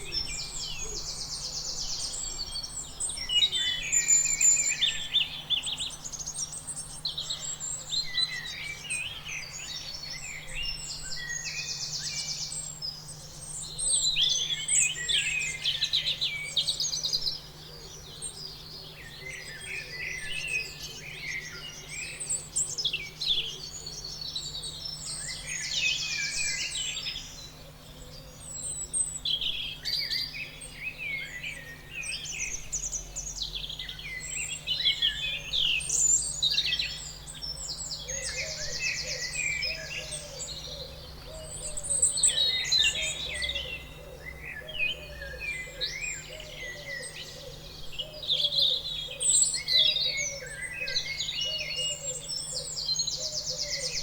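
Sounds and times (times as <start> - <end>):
birds chirping and whistling: 18.1 - 54.0.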